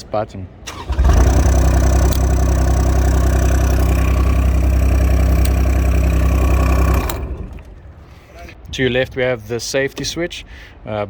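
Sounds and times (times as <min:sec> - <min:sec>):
diesel engine idling: 0:00.7 - 0:08.2.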